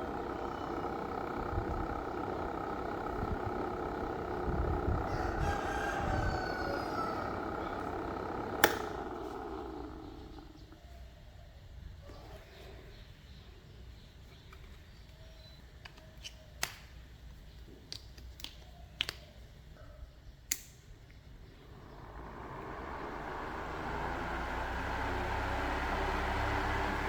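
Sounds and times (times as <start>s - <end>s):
small fan whirring: 0.0s - 13.2s, 20.7s - 27.0s.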